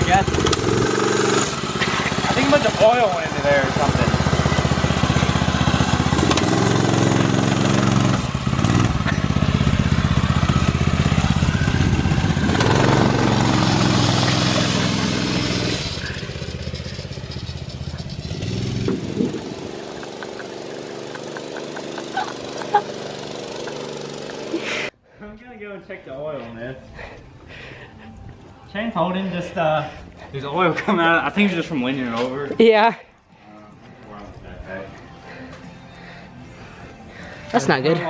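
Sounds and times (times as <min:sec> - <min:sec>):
dirt bike engine revving: 0:00.0 - 0:24.9.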